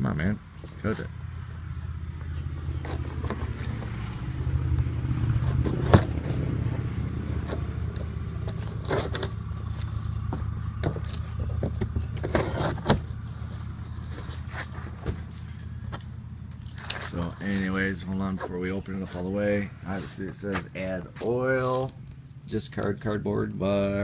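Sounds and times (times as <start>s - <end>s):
cardboard scraping and tearing: 5.2s - 16.0s
cardboard carton being cut: 8.5s - 9.4s, 12.2s - 13.2s.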